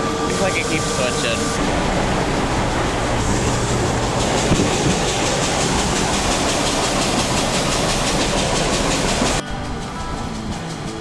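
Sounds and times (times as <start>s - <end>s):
engine running with fast pulse: 0.0s - 11.0s
steady hiss: 0.1s - 11.0s.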